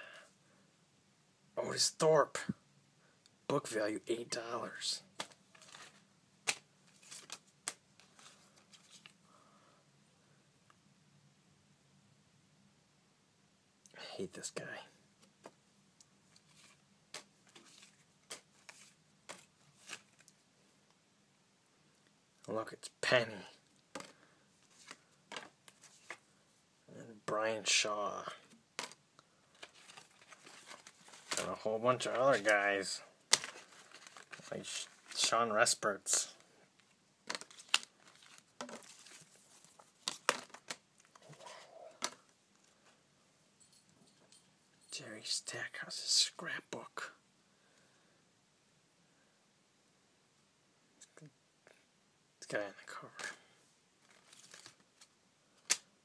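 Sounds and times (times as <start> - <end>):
soft rustling of cards: 1.7 - 9.6, 14.2 - 21.1, 21.8 - 48.2, 51.0 - 56.0
cards crinkling and snapping: 5.2 - 9.2, 16.4 - 20.4, 24.0 - 26.2, 28.8 - 32.7, 33.3 - 35.3, 36.8 - 42.3, 54.0 - 55.9.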